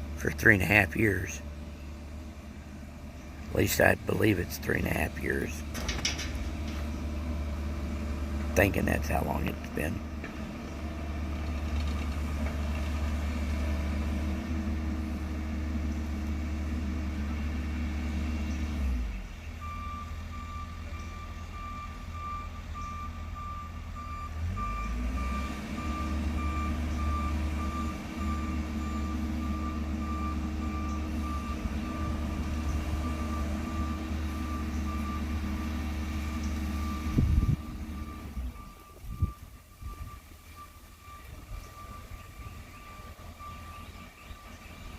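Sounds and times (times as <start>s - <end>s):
construction machinery diesel engine: 0.0s - 44.9s
backup alarm beeping: 19.6s - 44.0s.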